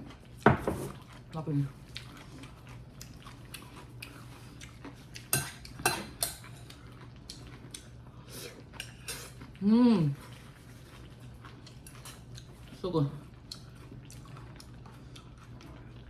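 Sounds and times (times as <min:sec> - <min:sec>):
utensils clinking on dishes: 0:05.3 - 0:06.8, 0:11.8 - 0:12.3
person humming mmm: 0:09.6 - 0:10.2.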